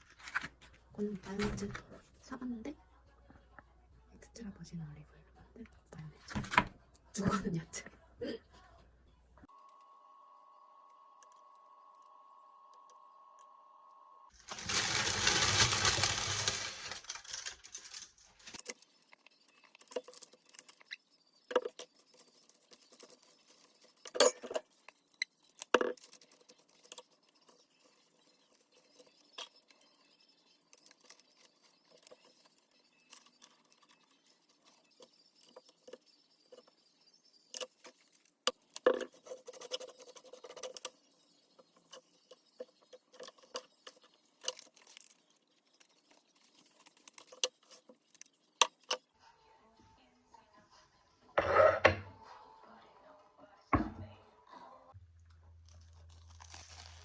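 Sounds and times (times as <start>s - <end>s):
loud rustling: 14.4s - 18.6s.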